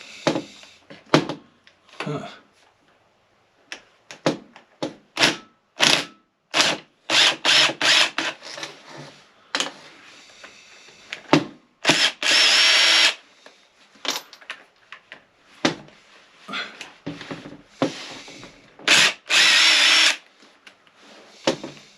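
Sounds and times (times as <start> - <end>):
handheld power tool running: 6.6 - 8.6, 11.8 - 13.2, 18.9 - 20.2.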